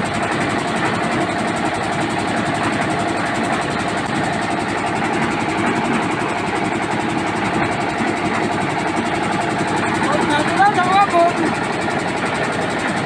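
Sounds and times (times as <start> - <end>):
diesel engine running steadily: 0.0 - 13.0.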